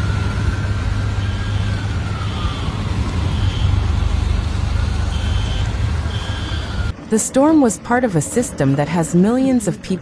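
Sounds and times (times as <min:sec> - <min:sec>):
distant siren wailing: 0:00.0 - 0:07.0
wind rumbling on microphone: 0:00.0 - 0:07.0.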